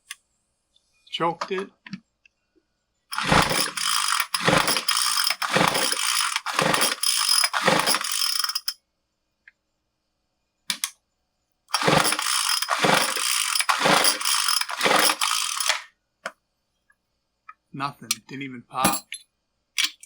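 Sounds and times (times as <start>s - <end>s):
engine turning over: 3.1s - 8.7s, 11.7s - 15.9s
recoil starter pulls: 3.1s - 8.7s, 11.7s - 15.9s.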